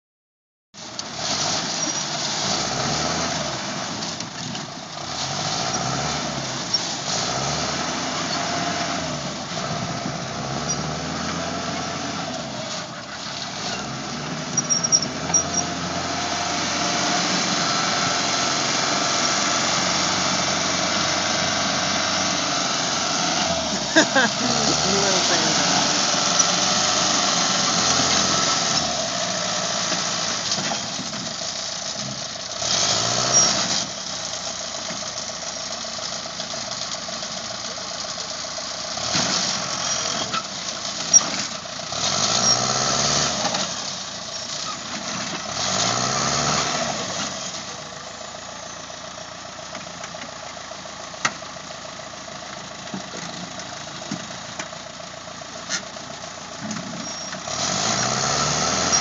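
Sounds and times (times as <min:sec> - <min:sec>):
vehicle engines revving: 0:00.9 - 0:35.1, 0:38.9 - 0:48.6, 0:55.6 - 0:59.0.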